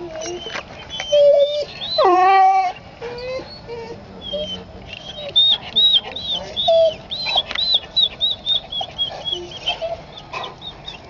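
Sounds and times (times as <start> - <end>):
animal chirping calls: 4.2 - 11.0.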